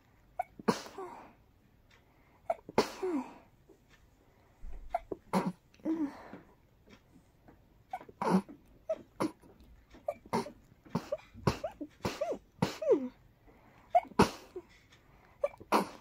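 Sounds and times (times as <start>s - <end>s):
person sneezing: 10.1s - 13.1s.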